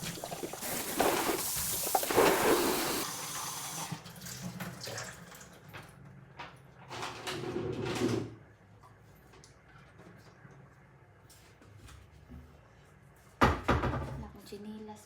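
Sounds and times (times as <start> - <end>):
water running and splashing: 0.0 - 3.9.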